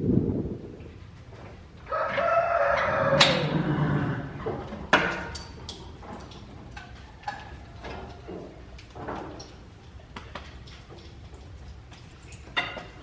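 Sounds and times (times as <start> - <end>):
rooster crowing: 1.9 - 4.3.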